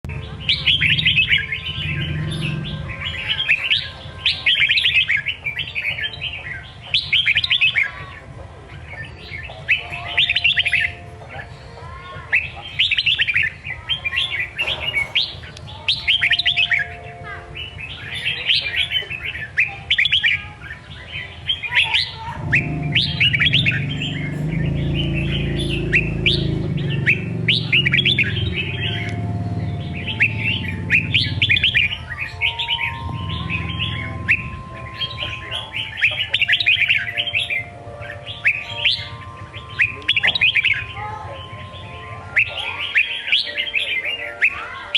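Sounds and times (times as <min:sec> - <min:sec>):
bird singing warbled phrases: 0:00.0 - 0:44.9
low steady rumble: 0:22.4 - 0:32.1.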